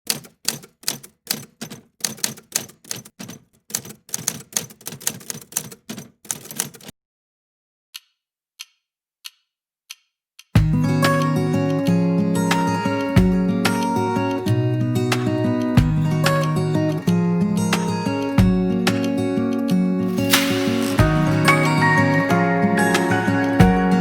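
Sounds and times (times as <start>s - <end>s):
keyboard keystrokes clacking: 0.0s - 6.9s
strummed guitar music: 10.6s - 24.0s
single clicks: 20.2s - 21.0s.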